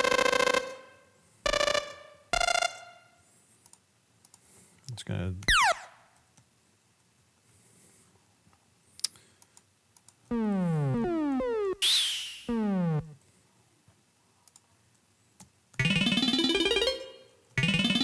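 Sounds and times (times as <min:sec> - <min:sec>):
faint computer clicks: 0:03.6 - 0:04.4
dense synth texture: 0:10.3 - 0:13.2
downward-gliding synth tones: 0:10.3 - 0:13.2.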